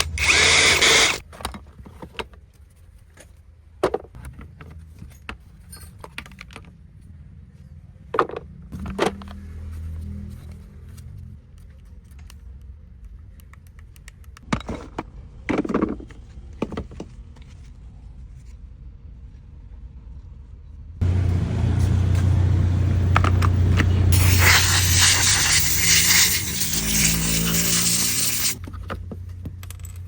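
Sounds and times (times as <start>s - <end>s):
power tool motor running: 0.0s - 1.2s, 21.0s - 28.6s.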